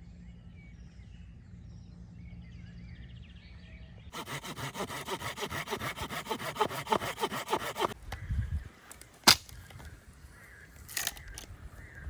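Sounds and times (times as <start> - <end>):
hand saw cutting wood: 4.2 - 8.0
sharp wood crack: 4.2 - 8.2, 8.9 - 9.9, 10.8 - 11.5.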